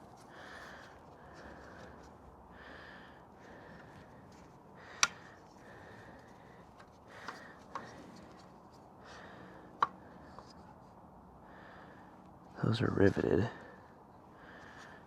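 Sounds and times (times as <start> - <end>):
plastic parts clicking: 4.9 - 5.4, 6.6 - 8.6.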